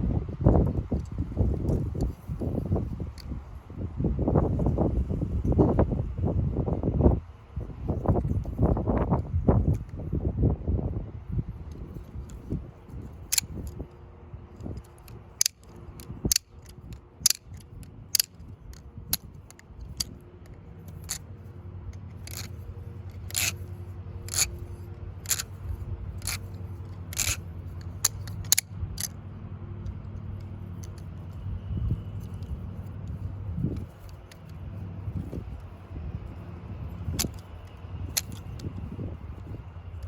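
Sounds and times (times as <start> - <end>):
plastic balisong trainer clicking: 11.7 - 40.0.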